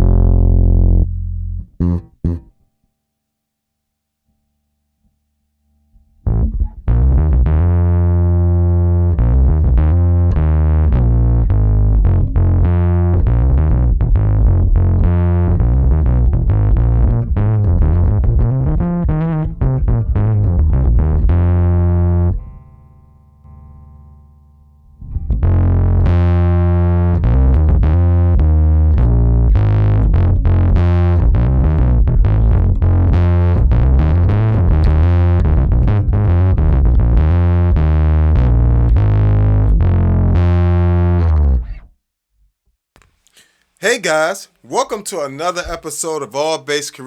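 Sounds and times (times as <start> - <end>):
distorted electric bass riff: 0.0 - 2.5, 6.2 - 22.9, 23.6 - 41.9.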